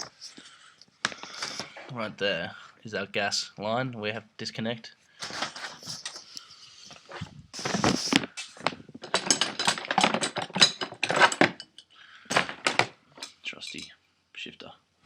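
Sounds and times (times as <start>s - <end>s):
metal tools clinking and scraping: 5.2s - 14.0s.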